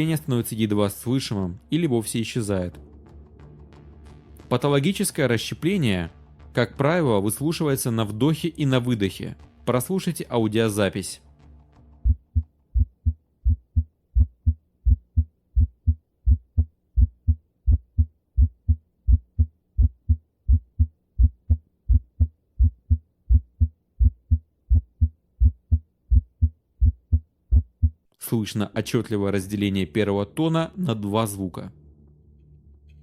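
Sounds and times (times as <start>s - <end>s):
heartbeat: 12.0s - 28.0s.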